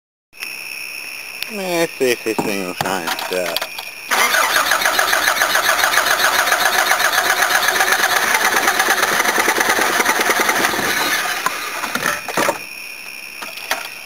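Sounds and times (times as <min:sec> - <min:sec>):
engine cranking on starter motor: 0:03.0 - 0:12.4.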